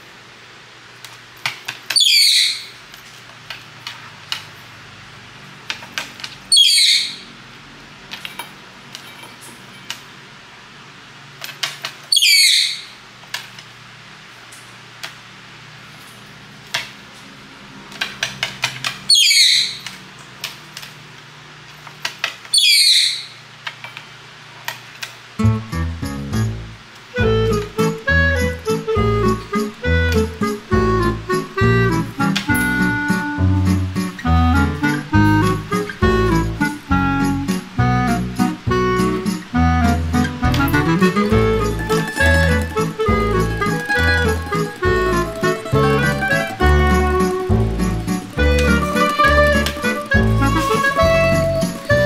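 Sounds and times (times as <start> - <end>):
parakeet screaming: 2.0 - 2.8, 6.5 - 7.3, 12.1 - 13.0, 19.1 - 19.8, 22.5 - 23.4.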